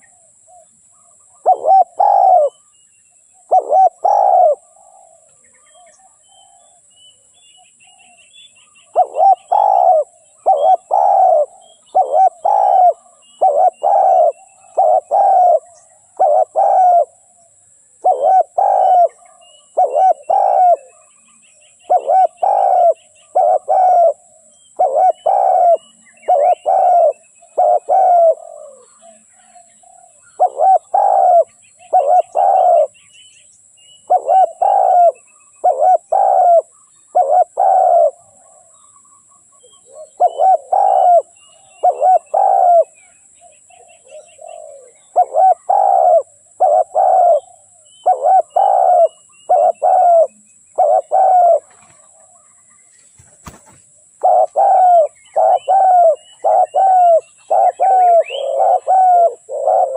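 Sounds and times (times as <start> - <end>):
dove cooing: 0.0 - 2.7, 3.3 - 6.9, 7.8 - 33.0, 34.0 - 38.9, 39.5 - 59.9
faint high bird chirps: 0.0 - 59.9.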